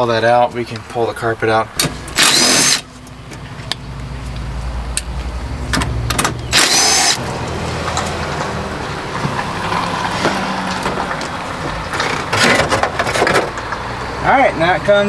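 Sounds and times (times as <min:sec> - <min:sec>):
power tool burst: 0:02.1 - 0:02.9, 0:06.5 - 0:07.2.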